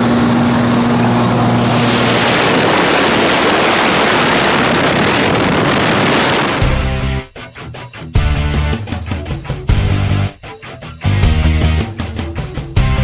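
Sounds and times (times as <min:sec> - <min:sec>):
wind rushing over microphone: 0:00.0 - 0:06.8
aircraft engine drone: 0:00.0 - 0:06.9.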